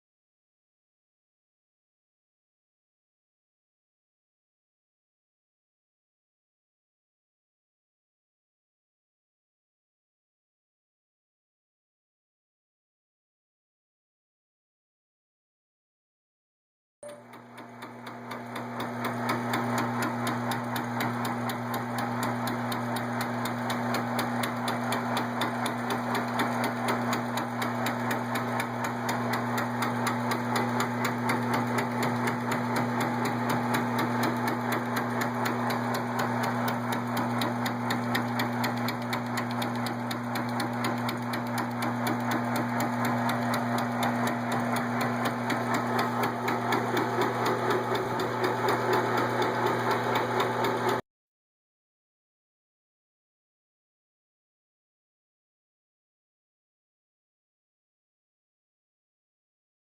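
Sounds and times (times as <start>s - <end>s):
metal lathe running: 17.3s - 51.0s.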